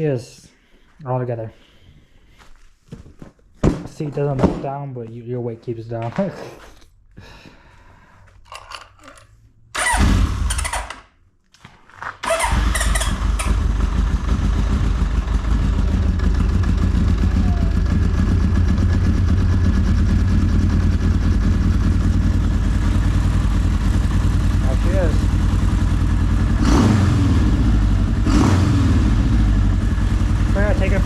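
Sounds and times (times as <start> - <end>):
motorcycle engine starting and idling: 9.7 - 11.1, 12.0 - 31.0.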